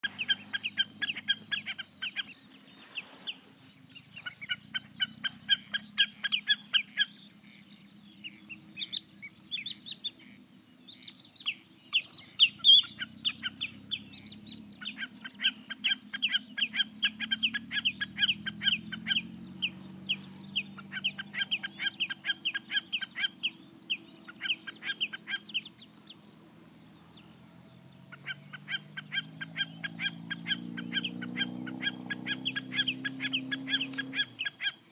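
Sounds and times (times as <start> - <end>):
snipe chipping call: 0.0 - 2.4, 11.5 - 26.2, 28.1 - 34.9.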